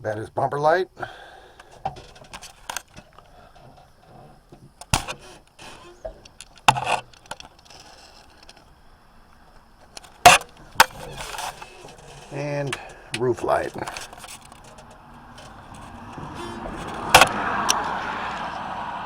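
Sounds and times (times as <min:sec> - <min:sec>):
faint steady hum: 0:00.0 - 0:17.4
switches clicking and knocking: 0:04.5 - 0:08.7, 0:09.8 - 0:18.5.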